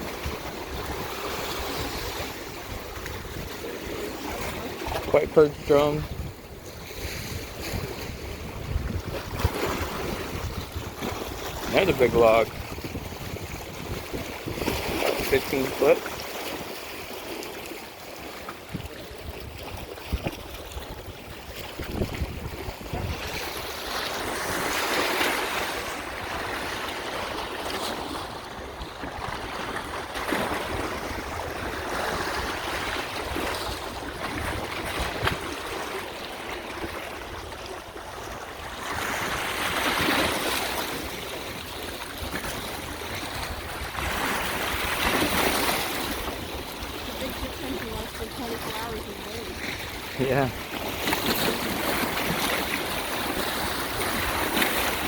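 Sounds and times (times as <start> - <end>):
wind rumbling on microphone: 0.0 - 15.6, 18.5 - 27.4, 28.2 - 36.0
waves washing onto beach: 0.0 - 55.0.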